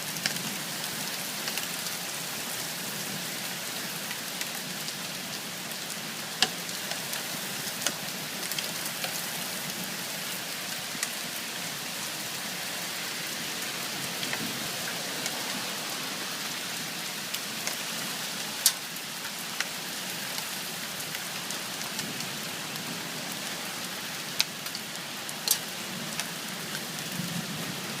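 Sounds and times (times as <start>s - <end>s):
rain falling steadily: 0.0s - 28.0s
hailstones ticking: 24.3s - 27.4s.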